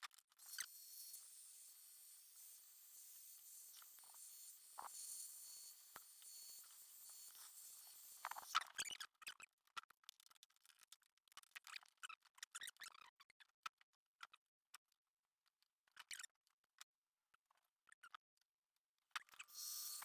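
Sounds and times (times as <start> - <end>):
clicks and rustles of wires: 8.3 - 19.5.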